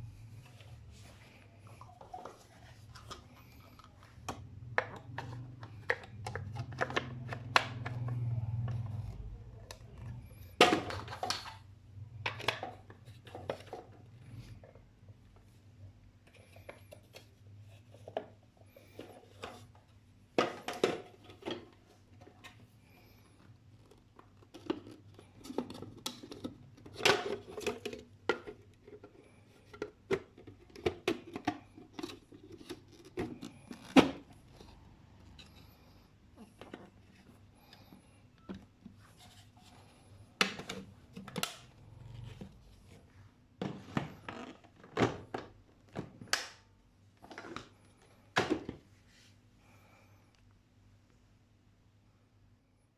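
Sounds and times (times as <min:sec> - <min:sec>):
faint low hum: 0:00.0 - 0:52.9
plastic parts clicking and knocking: 0:02.0 - 0:14.8, 0:23.8 - 0:34.7, 0:40.4 - 0:42.6.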